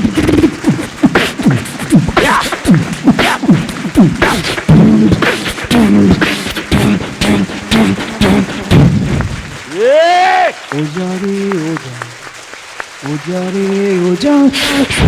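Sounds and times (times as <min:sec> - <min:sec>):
person humming a tune: 0:00.0 - 0:09.4
beatboxing: 0:00.0 - 0:12.3, 0:13.0 - 0:15.0.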